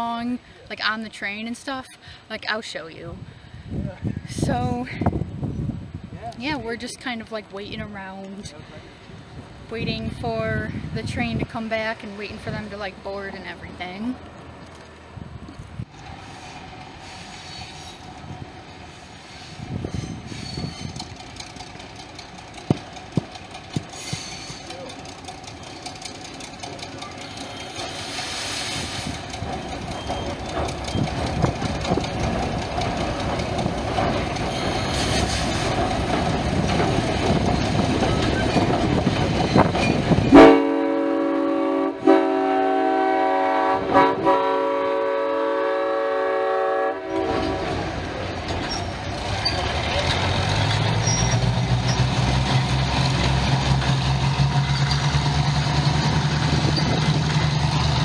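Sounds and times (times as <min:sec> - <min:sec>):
diesel locomotive rumble: 0:00.0 - 0:58.0
locomotive horn: 0:40.1 - 0:48.4.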